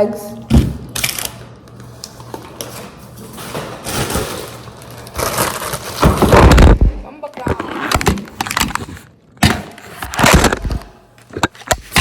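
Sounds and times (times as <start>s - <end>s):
packaging rustling: 1.0s - 6.8s.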